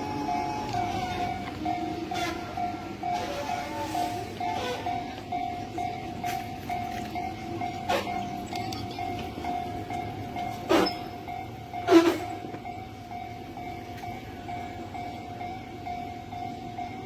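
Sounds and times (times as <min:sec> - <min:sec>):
train rumble: 0:00.0 - 0:17.0.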